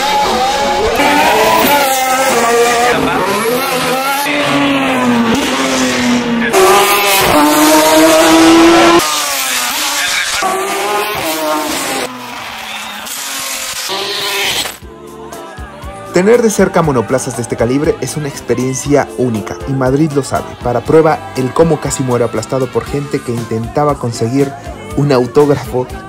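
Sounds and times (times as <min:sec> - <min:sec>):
racing car engines at high revs: 0:00.0 - 0:14.8, 0:19.5 - 0:24.8.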